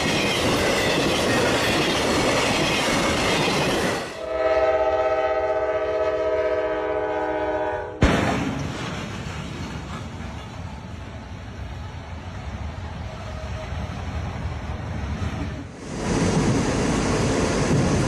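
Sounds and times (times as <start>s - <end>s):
train rumbling past: 0.0s - 18.0s
locomotive air horn: 4.2s - 8.0s.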